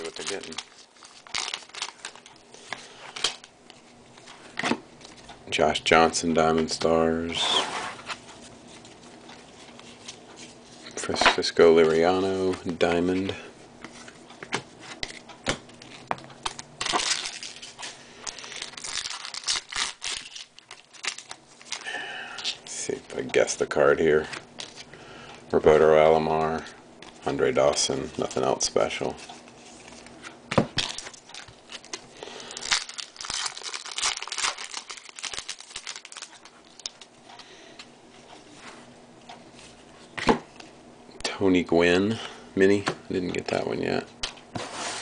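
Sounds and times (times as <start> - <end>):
trading cards and wrapper crinkling: 0.0 - 5.3, 14.9 - 22.6, 26.5 - 37.1.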